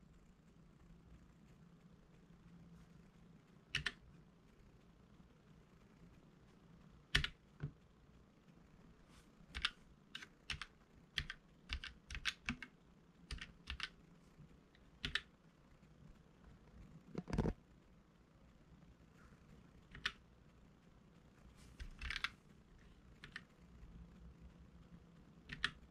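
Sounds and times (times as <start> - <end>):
keyboard key presses: 3.7 - 4.0, 7.1 - 7.8, 9.5 - 12.7, 13.3 - 14.0, 15.0 - 15.3, 19.9 - 20.2, 21.8 - 22.4, 23.2 - 23.5, 25.5 - 25.9.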